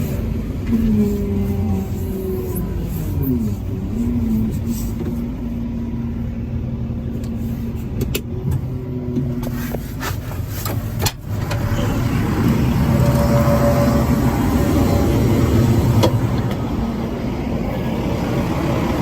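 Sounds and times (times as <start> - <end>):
diesel engine running: 0.0 - 19.0.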